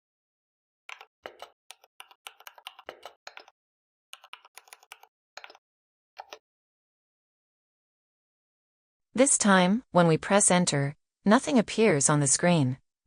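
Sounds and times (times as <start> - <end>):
typing on computer keyboard: 0.9 - 3.6, 4.2 - 5.6, 6.2 - 6.4.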